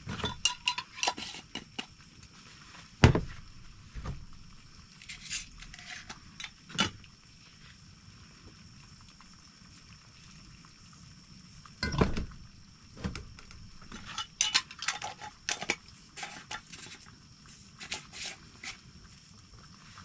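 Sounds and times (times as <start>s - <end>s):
utensil scraping a pan: 0.0s - 4.2s, 5.0s - 7.0s, 13.8s - 17.1s, 17.7s - 18.9s
dull knocks: 3.0s - 4.6s, 11.9s - 13.5s.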